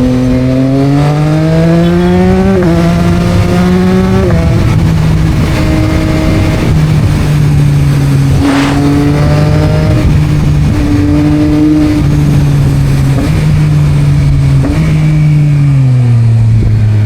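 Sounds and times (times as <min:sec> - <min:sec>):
motorcycle engine running loud: 0:00.0 - 0:17.0.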